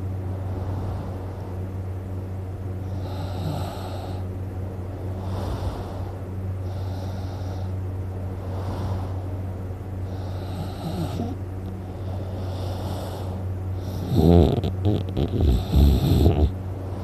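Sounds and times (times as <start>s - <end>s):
steady low hum: 0.0s - 17.0s
person snoring: 2.9s - 4.2s, 10.0s - 11.4s, 12.0s - 16.6s.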